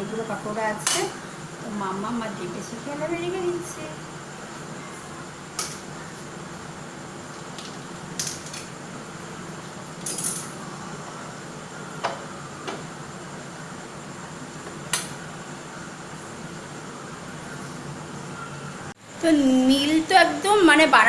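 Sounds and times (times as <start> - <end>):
low household hum: 0.0 - 21.0
kitchenware clinking: 0.8 - 1.2.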